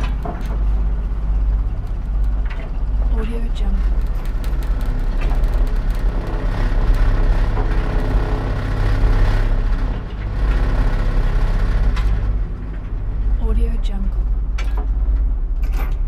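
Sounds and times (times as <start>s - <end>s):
elevator motor hum: 0.0s - 16.0s
humming whine: 0.0s - 16.0s
metallic rattling and clicking: 3.8s - 8.0s.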